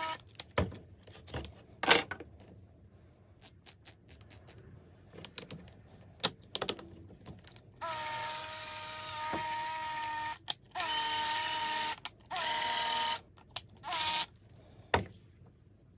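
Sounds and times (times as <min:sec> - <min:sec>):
small electric drill whining: 0:00.0 - 0:00.2, 0:07.8 - 0:14.3.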